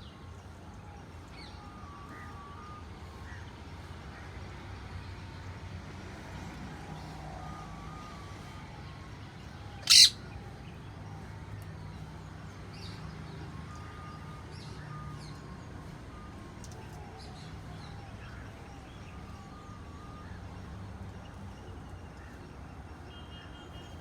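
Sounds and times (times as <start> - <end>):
low traffic hum: 0.0 - 24.0
birds chirping: 9.8 - 10.2
parrot screech: 9.8 - 10.2.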